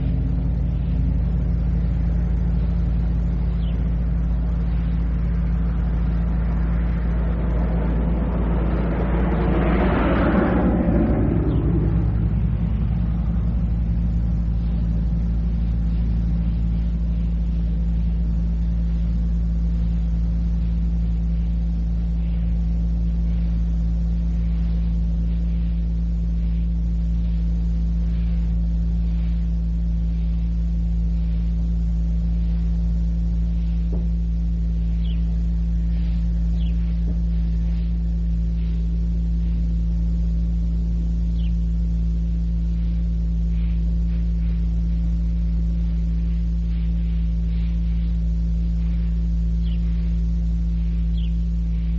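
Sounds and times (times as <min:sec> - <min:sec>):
low hum of fixed tones: 0:00.0 - 0:51.9
faint regular ticks: 0:15.6 - 0:51.9.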